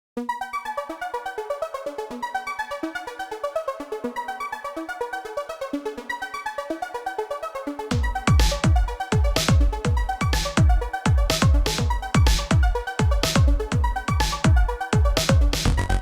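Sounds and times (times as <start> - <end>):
synthesizer keyboard notes: 7.9 - 16.0.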